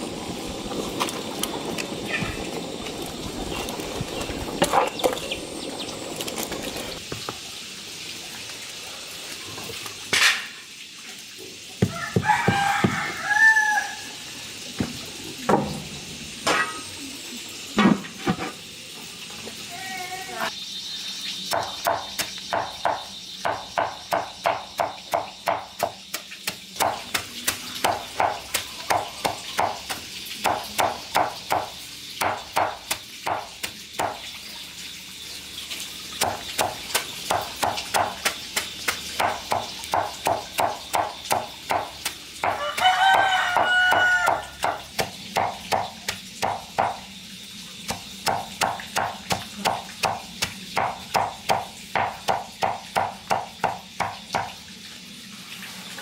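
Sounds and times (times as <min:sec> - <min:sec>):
knife chopping on wooden board: 0:36.2 - 0:47.0.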